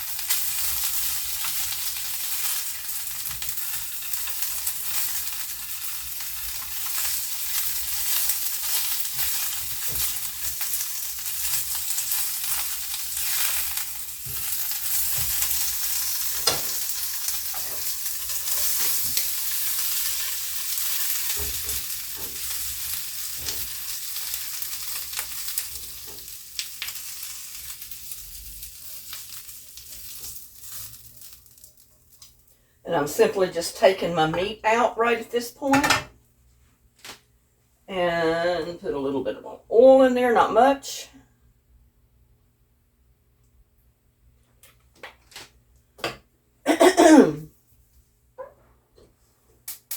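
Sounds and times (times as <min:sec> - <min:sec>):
chicken sizzling in oil: 0:00.0 - 0:32.4.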